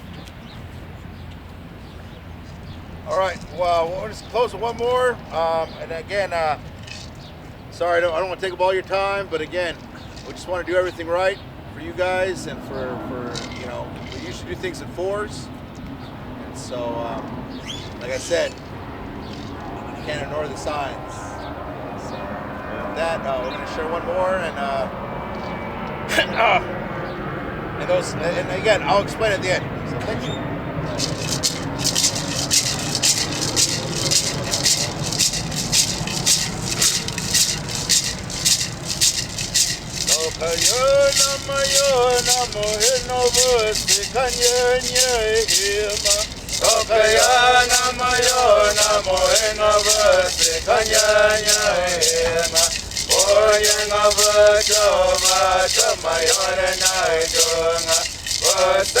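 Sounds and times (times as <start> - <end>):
hand rattle shaken in a beat: 3.2 - 7.2, 13.3 - 14.8, 17.1 - 18.7, 19.3 - 20.9, 30.8 - 59.0
person singing a chant: 31.0 - 59.0.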